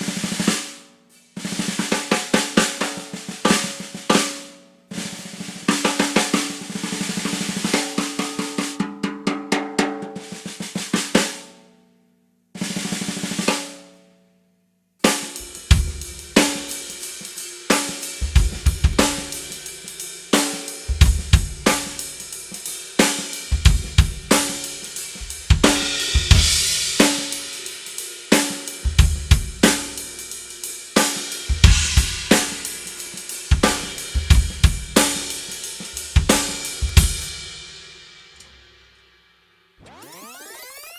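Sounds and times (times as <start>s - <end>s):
snare drum strokes: 0.0s - 11.5s, 15.1s - 30.3s, 31.0s - 37.7s
cymbals: 15.1s - 39.1s
bass drum: 15.4s - 16.7s, 18.2s - 19.6s, 20.9s - 22.0s, 23.5s - 24.6s, 25.2s - 27.0s, 28.9s - 29.8s, 31.5s - 32.6s, 33.5s - 35.3s, 35.9s - 37.4s.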